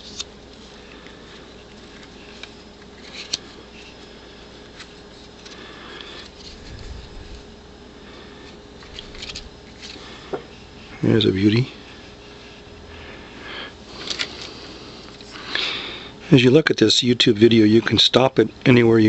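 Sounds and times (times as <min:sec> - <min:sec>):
steady low hum: 0:00.0 - 0:19.0
rustling: 0:01.6 - 0:11.0.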